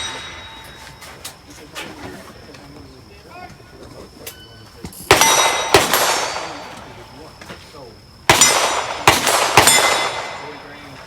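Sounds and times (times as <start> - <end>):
steel target clanging: 0.0 - 1.5, 4.3 - 7.5, 8.3 - 11.0
pistol shots: 5.1 - 7.2, 8.3 - 11.0.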